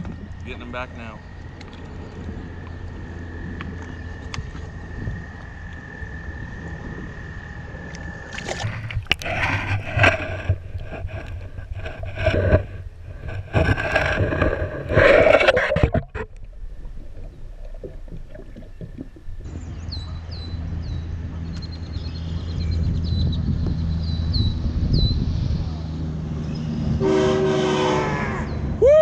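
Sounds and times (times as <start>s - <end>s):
water splashing against kayak: 0.0s - 19.8s.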